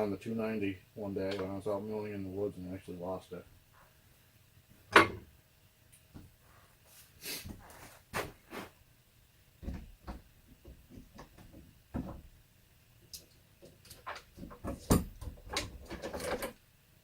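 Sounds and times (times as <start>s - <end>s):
tools tapping and clunking: 4.9s - 5.3s, 9.6s - 12.4s, 13.2s - 16.6s.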